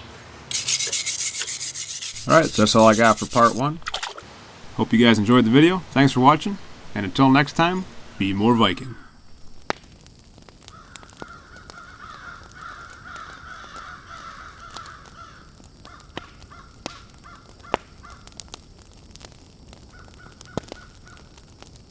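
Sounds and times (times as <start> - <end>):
crow-like cawing: 10.7 - 17.8.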